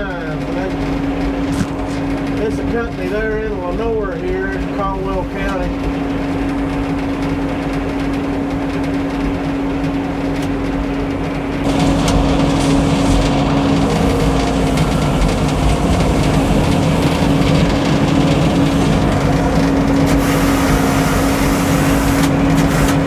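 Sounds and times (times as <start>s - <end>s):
sawmill machine hum: 0.0s - 23.0s.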